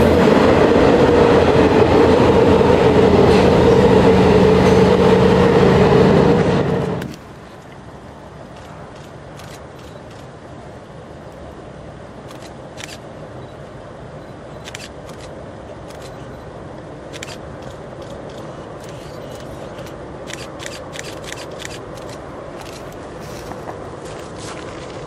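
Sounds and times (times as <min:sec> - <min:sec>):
train rumbling past: 0:00.0 - 0:25.0
sharp clicks of train wheels: 0:08.5 - 0:10.4, 0:12.3 - 0:13.1, 0:14.6 - 0:16.3, 0:17.1 - 0:24.9.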